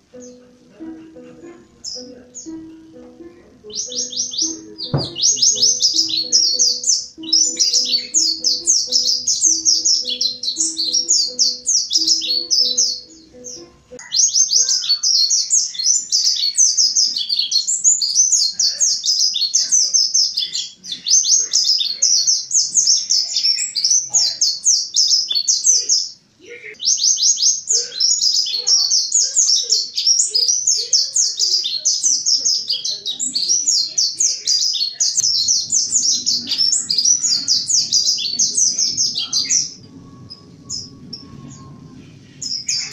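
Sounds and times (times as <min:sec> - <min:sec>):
bird chattering song: 0:00.0 - 0:42.9.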